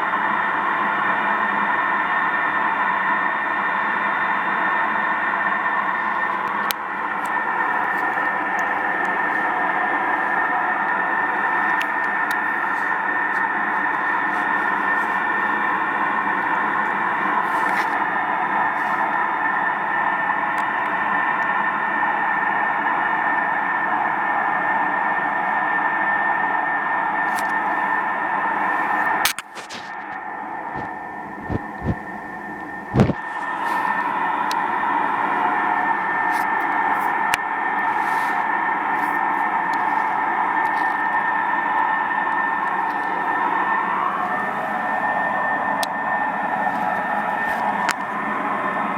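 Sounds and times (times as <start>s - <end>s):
thin high whine: 27.4s - 41.2s
hissing rumble drone: 28.5s - 41.2s.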